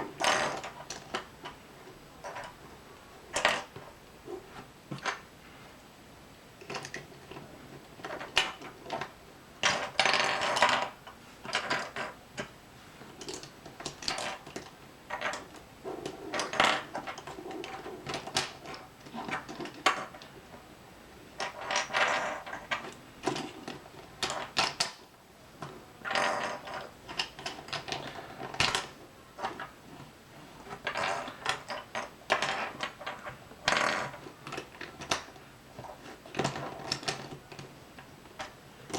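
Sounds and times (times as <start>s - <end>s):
plastic puzzle cube pieces clicking: 13.2s - 20.3s, 30.8s - 37.7s.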